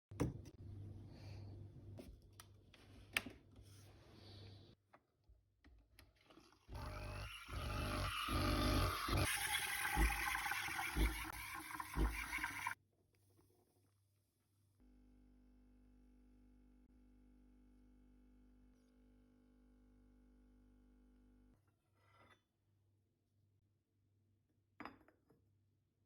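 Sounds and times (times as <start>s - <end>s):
espresso machine hissing and gurgling: 6.8s - 12.8s.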